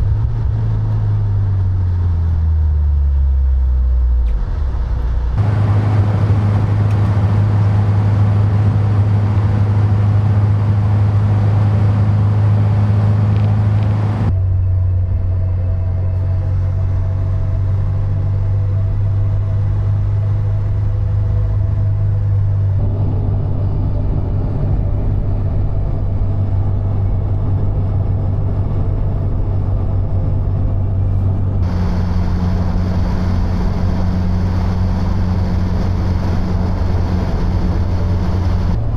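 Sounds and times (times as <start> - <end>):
tyre and road noise: 0.0 - 14.5, 22.6 - 38.9
car engine droning: 0.0 - 38.9.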